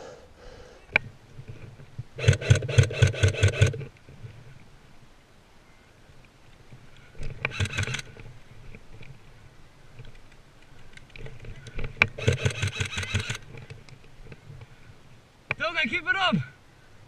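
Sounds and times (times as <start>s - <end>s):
airsoft rifle full-auto bursts: 2.2s - 3.8s, 7.5s - 8.1s, 12.2s - 13.4s.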